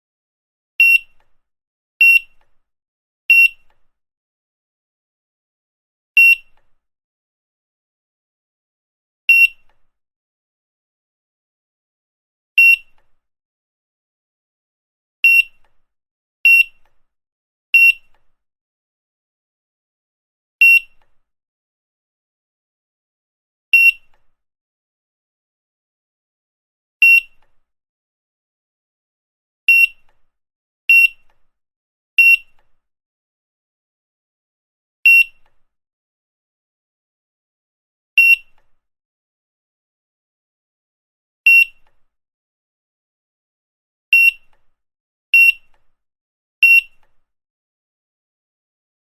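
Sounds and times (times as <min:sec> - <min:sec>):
barcode scanner beeps: 0:00.8 - 0:01.2, 0:02.0 - 0:02.5, 0:03.3 - 0:03.7, 0:06.2 - 0:06.6, 0:09.3 - 0:09.7, 0:12.6 - 0:13.0, 0:15.2 - 0:15.6, 0:17.8 - 0:18.1, 0:20.6 - 0:21.0, 0:23.8 - 0:24.1, 0:27.0 - 0:27.5, 0:29.7 - 0:30.1, 0:30.9 - 0:31.3, 0:32.2 - 0:32.6, 0:35.1 - 0:35.4, 0:38.2 - 0:38.6, 0:41.5 - 0:41.9, 0:44.2 - 0:44.6, 0:45.4 - 0:45.8, 0:46.6 - 0:47.0.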